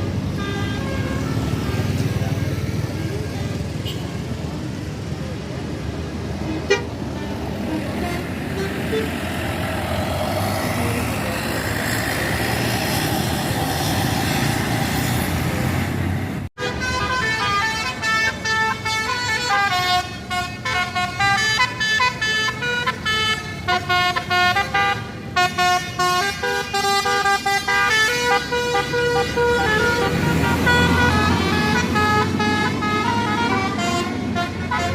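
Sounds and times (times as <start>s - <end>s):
vehicle engine: 0.0s - 34.9s
multi-tone bus horn playing tune: 0.1s - 4.5s, 6.4s - 10.2s, 16.6s - 34.9s
voices: 1.5s - 12.7s.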